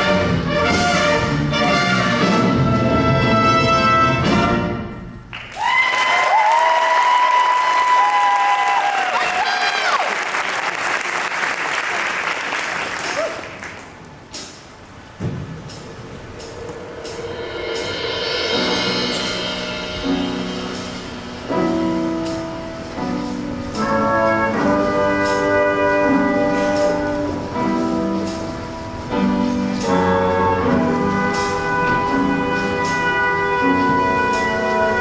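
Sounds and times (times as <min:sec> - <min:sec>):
brass section holding chords: 0:00.0 - 0:04.9, 0:23.8 - 0:27.6, 0:30.0 - 0:35.0.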